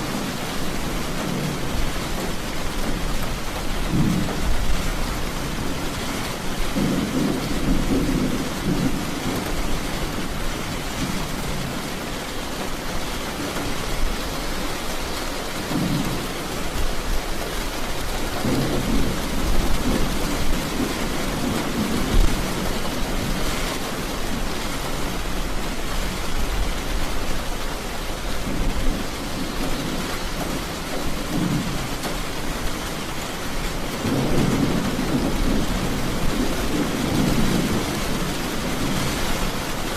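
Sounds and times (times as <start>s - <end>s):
thunder rolling: 0.0s - 11.9s, 17.9s - 25.4s, 28.4s - 33.0s, 33.8s - 39.7s
steady rain: 0.0s - 39.9s.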